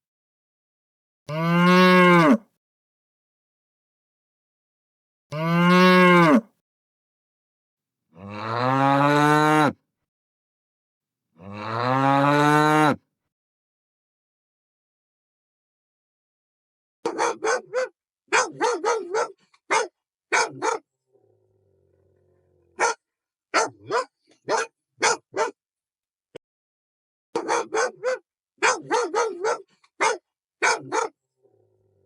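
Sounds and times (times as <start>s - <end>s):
dog barking: 17.0s - 20.9s, 22.8s - 25.6s, 27.4s - 31.2s.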